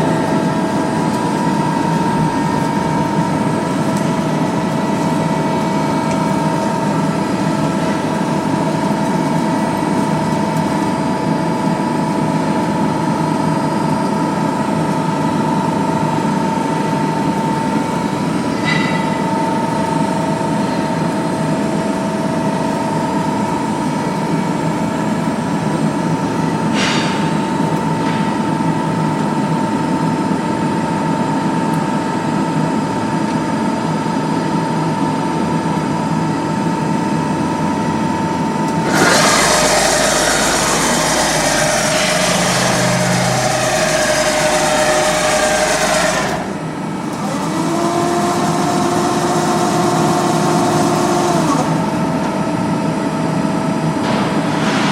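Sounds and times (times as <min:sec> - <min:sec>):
machine motor hum with whine: 0:37.3 - 0:54.1.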